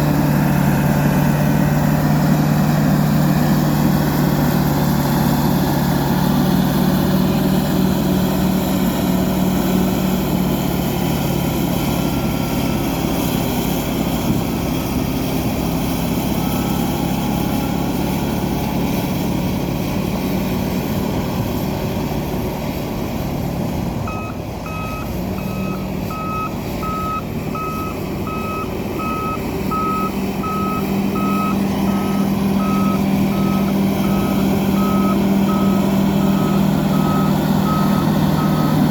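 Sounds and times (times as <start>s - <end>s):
bulldozer diesel engine running: 0.0s - 38.9s
reversing alarm beeping: 24.1s - 38.9s.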